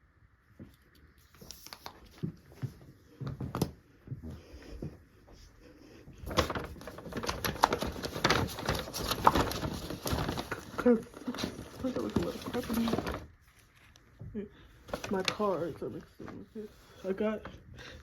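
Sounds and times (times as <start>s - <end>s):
rustling and crackling: 6.2s - 14.2s, 14.8s - 17.6s
items rummaged in a bag: 6.3s - 13.9s, 14.8s - 16.4s.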